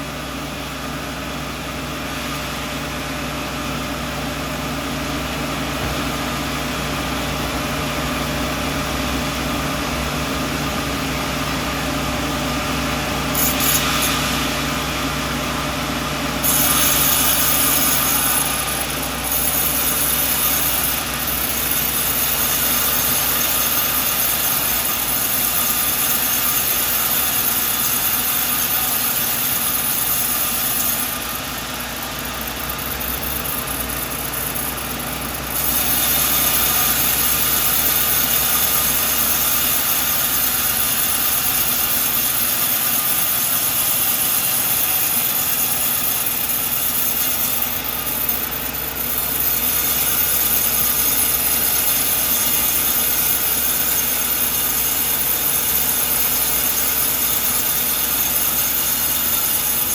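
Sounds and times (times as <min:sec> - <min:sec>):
sawmill engine hum: 0:00.0 - 0:59.9
saw blade cutting log: 0:04.0 - 0:59.9.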